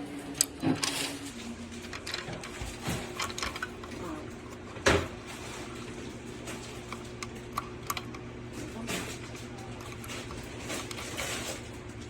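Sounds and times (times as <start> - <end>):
steady low hum: 0.0 - 12.0
small hard parts clicking: 1.7 - 4.6.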